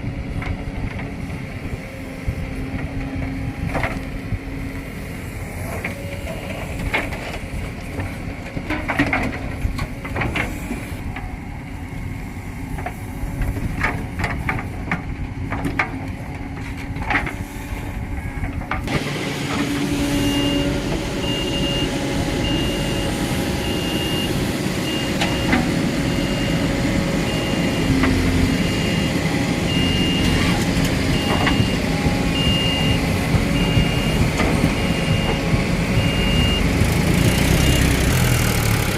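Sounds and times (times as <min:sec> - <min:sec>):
diesel engine running: 0:00.0 - 0:38.9
reversing alarm beeping: 0:20.0 - 0:38.7.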